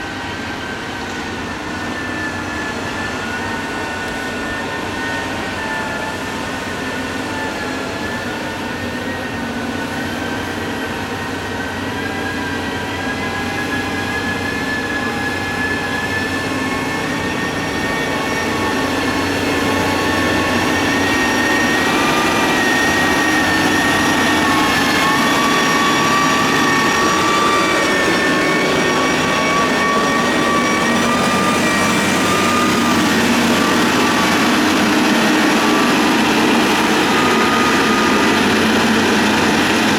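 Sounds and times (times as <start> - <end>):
diesel engine rumbling with whine: 0.0 - 39.9.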